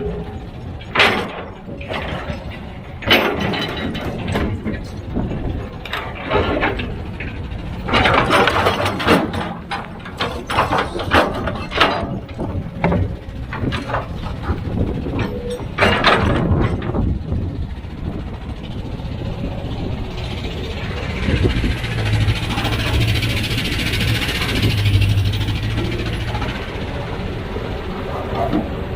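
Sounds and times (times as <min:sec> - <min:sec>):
diesel engine drone: 0:00.0 - 0:28.9
machinery clanks and knocks: 0:00.0 - 0:28.9.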